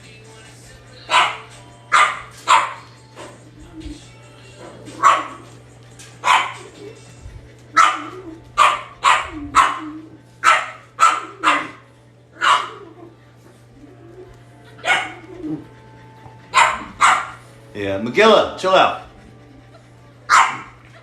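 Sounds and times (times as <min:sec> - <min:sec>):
dog barking: 0:01.1 - 0:03.4, 0:04.6 - 0:05.5, 0:06.2 - 0:06.8, 0:07.7 - 0:13.0, 0:14.8 - 0:15.6, 0:16.5 - 0:17.5, 0:20.3 - 0:20.8.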